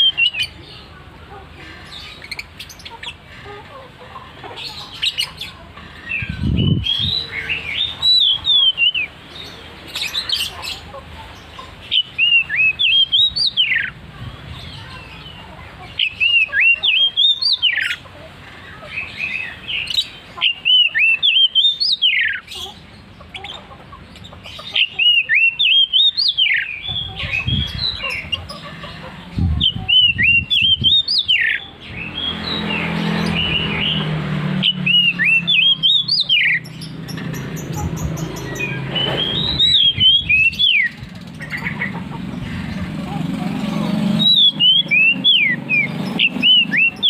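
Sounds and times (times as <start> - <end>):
bird singing whistled phrases: 6.4 - 9.1, 11.9 - 14.0, 16.0 - 18.0, 19.5 - 22.4, 24.8 - 28.0, 29.6 - 32.7, 34.6 - 36.6, 38.6 - 41.6, 44.2 - 47.0.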